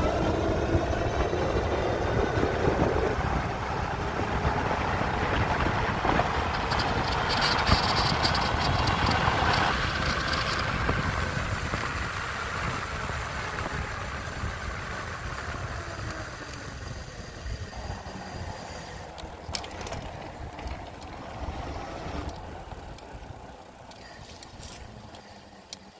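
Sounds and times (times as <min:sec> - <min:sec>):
motor whining and rattling: 0:00.0 - 0:25.9.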